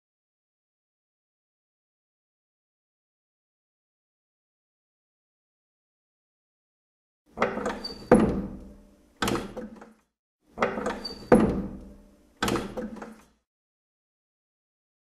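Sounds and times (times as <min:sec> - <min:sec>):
door banging shut: 0:07.4 - 0:09.8, 0:10.6 - 0:13.2
door rattling: 0:07.4 - 0:09.8, 0:10.6 - 0:13.2
door thud: 0:11.3 - 0:13.0.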